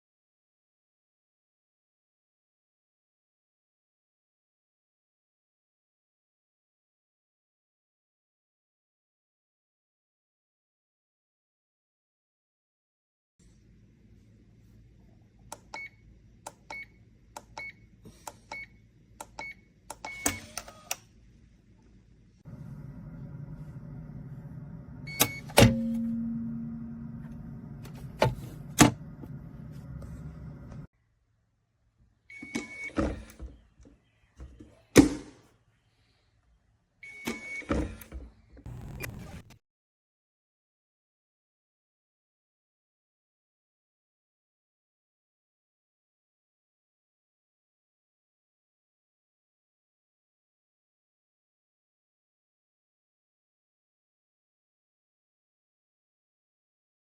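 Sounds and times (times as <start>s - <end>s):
low steady hum: 21.3s - 30.9s, 38.7s - 39.6s
short electronic beep: 38.7s - 39.6s.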